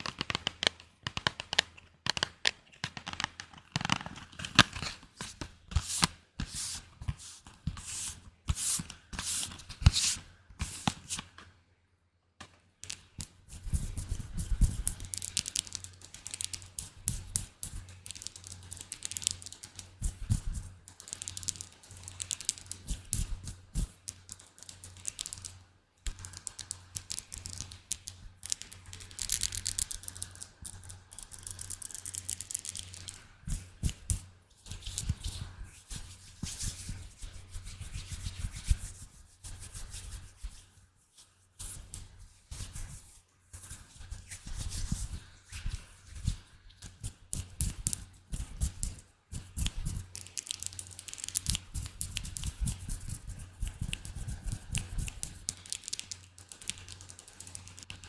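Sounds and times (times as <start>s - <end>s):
scratching on objects: 12.8s - 58.0s.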